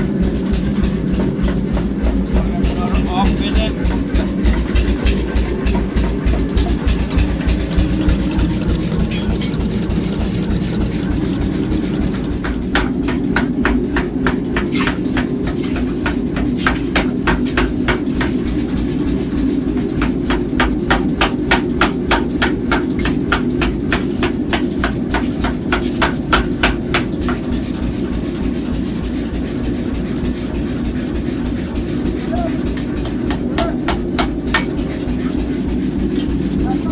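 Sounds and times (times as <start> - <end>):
hammer blows on metal: 31.3 - 36.9.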